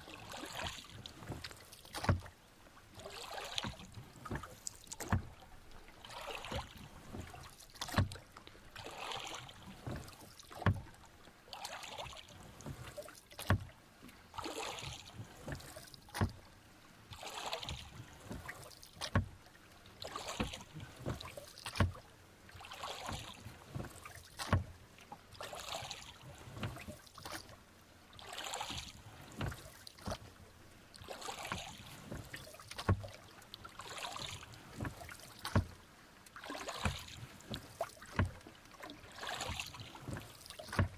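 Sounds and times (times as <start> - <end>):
oar blades splashing through water: 0.0 - 40.9
oars knocking: 1.3 - 2.3, 3.6 - 5.4, 15.5 - 16.4, 39.2 - 40.9.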